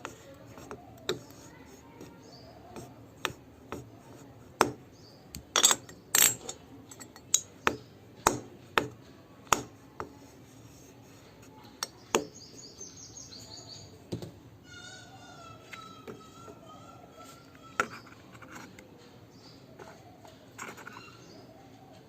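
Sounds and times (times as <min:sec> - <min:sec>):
metal and glass parts clinking: 0:05.5 - 0:07.5.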